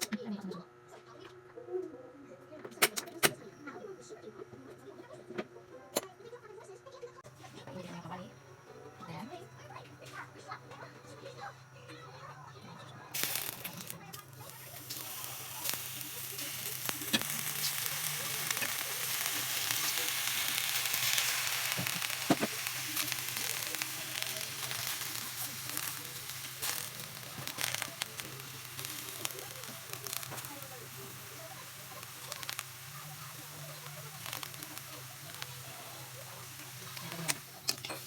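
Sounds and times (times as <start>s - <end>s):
leaves sizzling in a hot pan: 13.1s - 38.0s.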